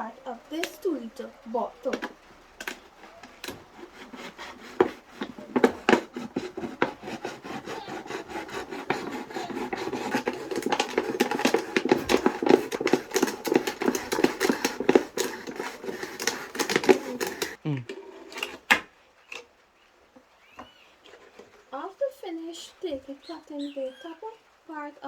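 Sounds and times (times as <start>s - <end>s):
knife sawing plastic bottle: 0.0s - 17.6s.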